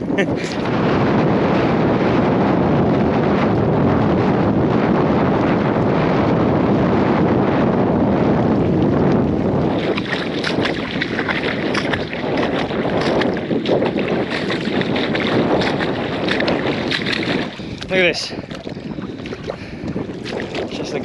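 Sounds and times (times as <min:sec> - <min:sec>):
wind buffeting microphone: 0:00.0 - 0:21.0
irregular footsteps: 0:09.8 - 0:17.9.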